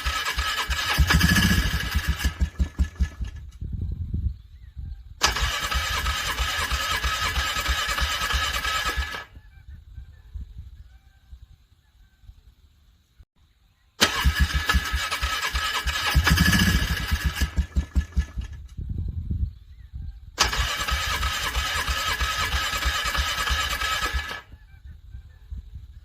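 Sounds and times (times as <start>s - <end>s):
starter cranking engine: 0.0s - 3.6s, 5.2s - 9.3s, 14.0s - 18.8s, 20.4s - 24.5s.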